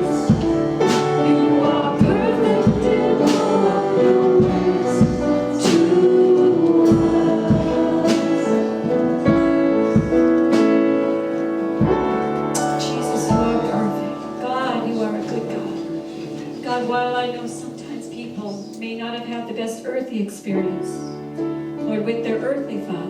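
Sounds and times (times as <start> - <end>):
steady drum beat: 0.0 - 11.0, 11.8 - 15.1
sustained keyboard chords: 0.0 - 23.0.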